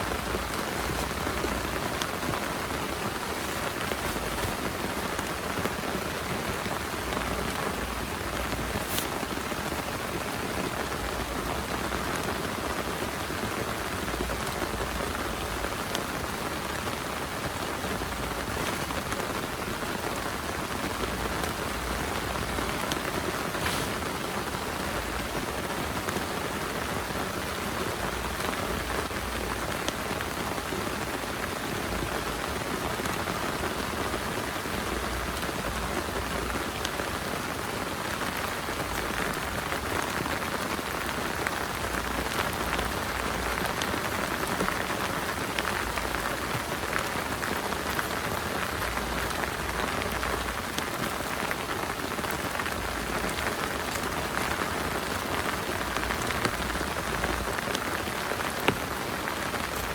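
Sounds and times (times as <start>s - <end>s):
heavy rain: 0.0s - 59.9s.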